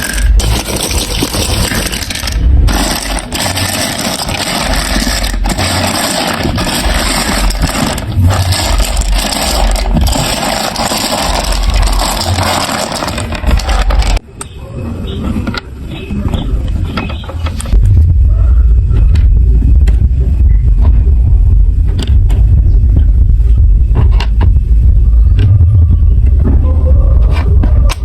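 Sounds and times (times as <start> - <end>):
marbles rattling on plastic track: 0.0 - 14.2.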